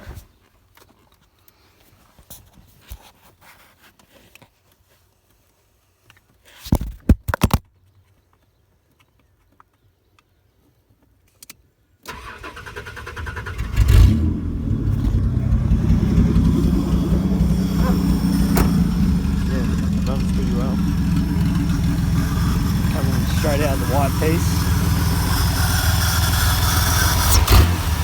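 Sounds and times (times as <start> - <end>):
car engine cranking and starting: 12.1 - 28.0.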